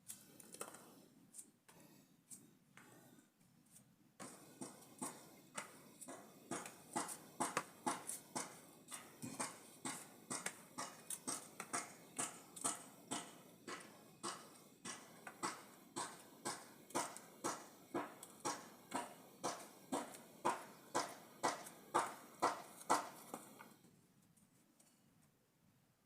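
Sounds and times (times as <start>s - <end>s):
knife chopping on cutting board: 4.2s - 23.4s.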